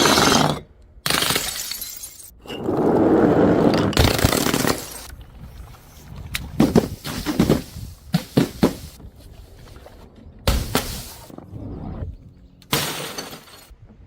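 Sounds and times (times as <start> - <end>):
glass breaking crash: 1.1 - 2.3, 12.7 - 13.7.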